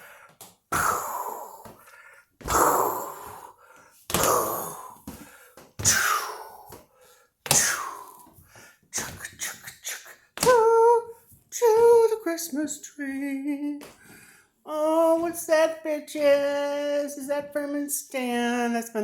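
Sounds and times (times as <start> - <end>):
heavy stomping footsteps: 2.4 - 3.5.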